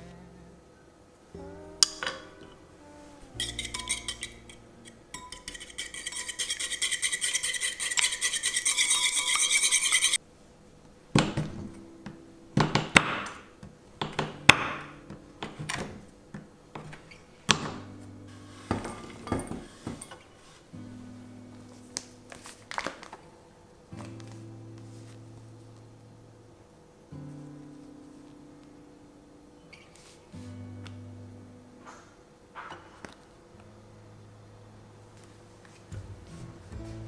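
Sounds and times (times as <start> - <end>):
dishes and cutlery clinking: 3.4 - 10.2, 18.6 - 20.4
utensil beating in a bowl: 3.4 - 10.2.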